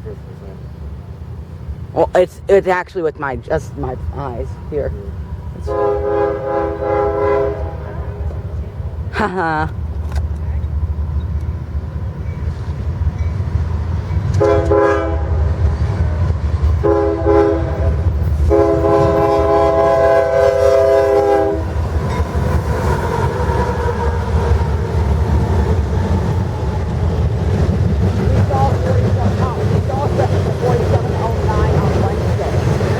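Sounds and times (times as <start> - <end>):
train rumbling on rails: 0.0 - 32.9
locomotive air horn blasts: 5.6 - 8.3, 14.4 - 15.5, 16.8 - 21.8.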